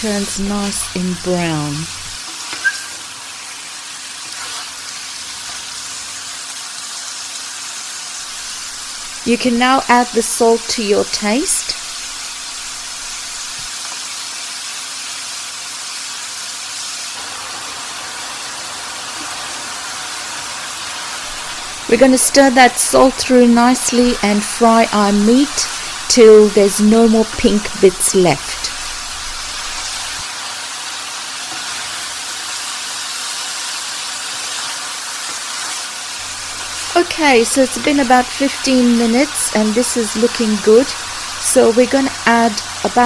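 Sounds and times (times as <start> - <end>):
liver sizzling in hot oil: 0.0 - 43.0.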